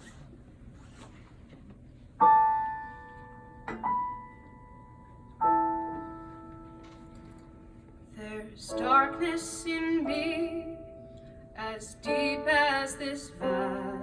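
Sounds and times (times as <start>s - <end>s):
piano chords ringing: 2.2s - 14.0s.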